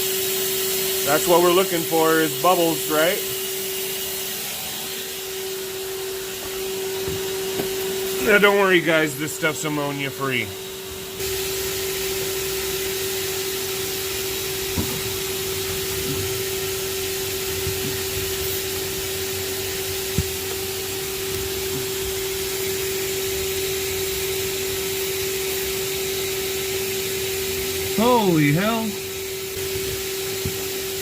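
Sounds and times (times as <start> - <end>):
blower motor whining: 0.0 - 31.0
air rushing through hose: 11.2 - 31.0.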